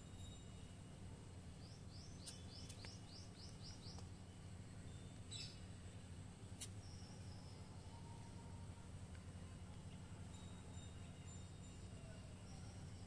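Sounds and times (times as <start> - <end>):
low steady hum: 0.0 - 13.0
bird chirping: 1.6 - 5.8, 6.5 - 8.5.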